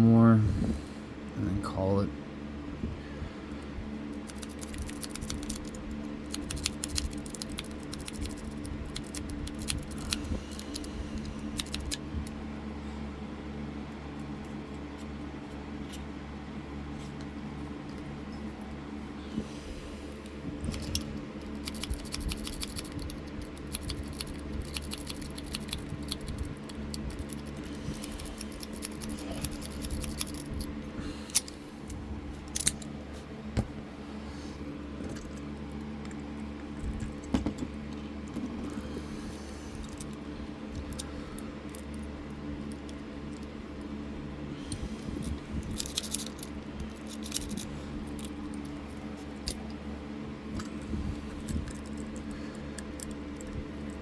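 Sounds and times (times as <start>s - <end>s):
low hum: 0.0s - 54.0s
lock pick clicking and scraping: 4.1s - 12.0s, 20.6s - 32.9s, 39.7s - 43.5s, 44.7s - 49.7s, 51.4s - 54.0s.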